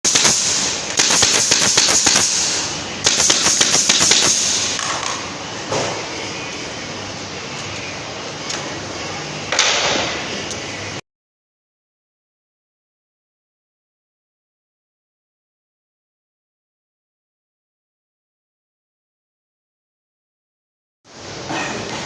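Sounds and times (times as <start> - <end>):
nail gun firing into wood: 0.1 - 4.9.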